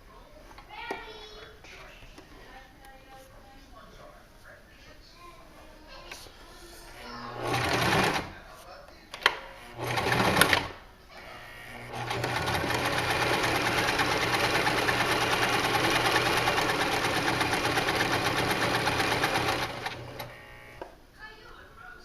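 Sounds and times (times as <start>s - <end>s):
sewing machine running: 7.4s - 8.3s, 9.6s - 10.8s, 11.4s - 20.8s.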